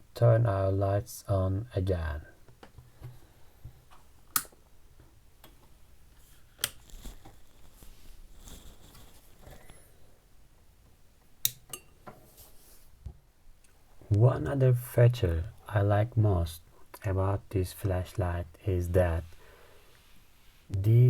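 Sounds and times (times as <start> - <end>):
faint handling noise: 2.5 - 10.1.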